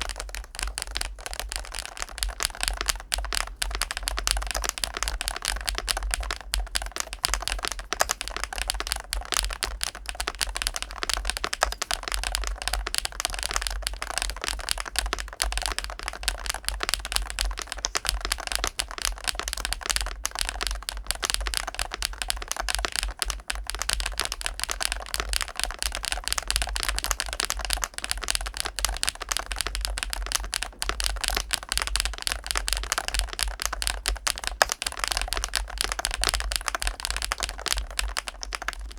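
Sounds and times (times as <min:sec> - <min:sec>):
keyboard typing clacks: 0:00.0 - 0:38.9.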